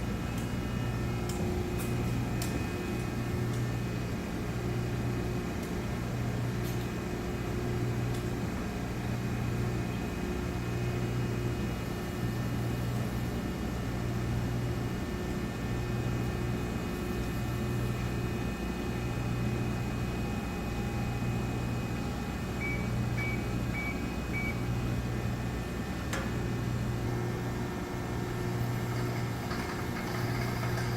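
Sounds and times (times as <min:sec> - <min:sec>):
hydraulic pump motor humming: 0:23.2 - 0:30.9.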